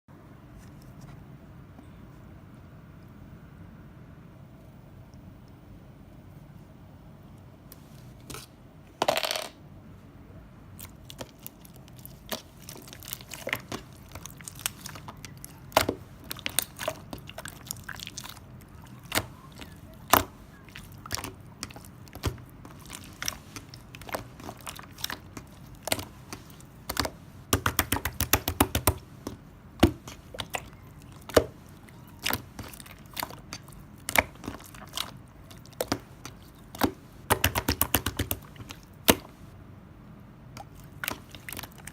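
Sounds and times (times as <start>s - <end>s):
slime squished by hand: 10.7s - 39.4s, 40.6s - 41.9s.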